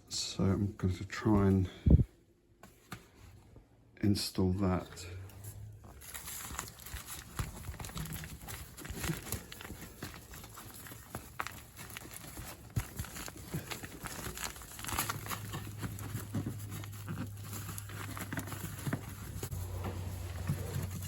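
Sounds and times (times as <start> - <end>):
low steady hum: 0.0 - 21.0
heat-shield blanket crinkling: 5.3 - 21.0.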